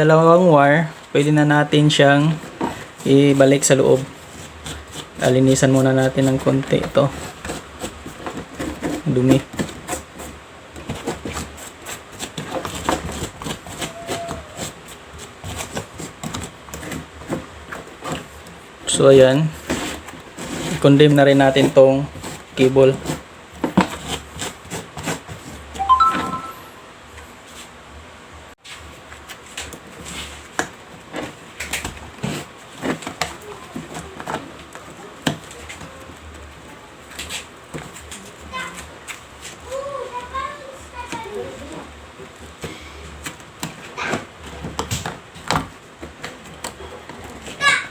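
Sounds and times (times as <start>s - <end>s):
hands and tools scraping: 1.8s - 18.6s, 19.2s - 26.5s, 28.6s - 36.1s.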